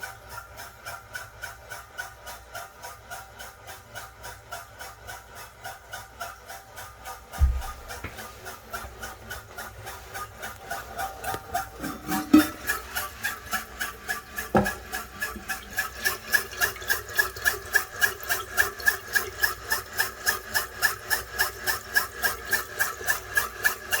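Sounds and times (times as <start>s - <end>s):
toilet rhythmic pulsing noise: 0.0s - 24.0s
sharp knocks: 7.4s - 8.3s, 14.6s - 14.8s.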